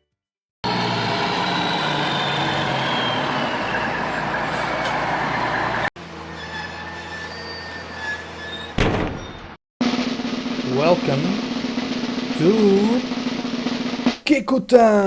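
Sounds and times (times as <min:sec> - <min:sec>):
heavy vehicle engine: 0:00.6 - 0:08.6
steady machine hum: 0:10.2 - 0:14.1.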